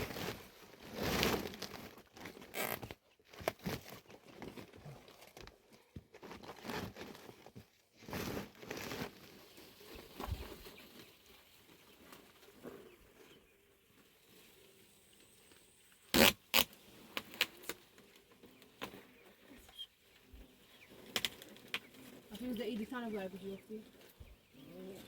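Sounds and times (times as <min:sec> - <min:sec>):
material rustling and crinkling: 0:00.0 - 0:13.3.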